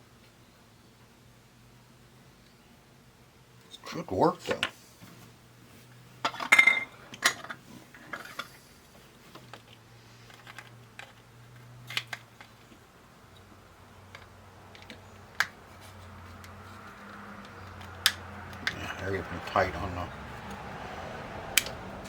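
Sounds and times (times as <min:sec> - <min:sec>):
plastic parts clicking and clattering: 0:09.3 - 0:12.8, 0:14.1 - 0:15.6.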